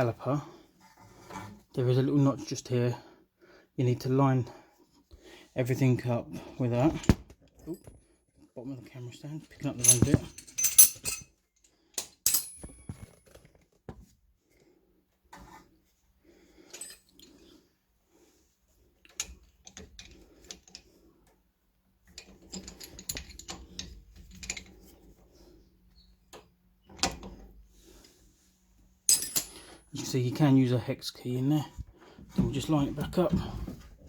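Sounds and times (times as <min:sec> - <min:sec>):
metallic clicks and clinks of tools: 0:09.8 - 0:11.3, 0:12.0 - 0:13.4, 0:22.2 - 0:24.7, 0:29.1 - 0:29.9.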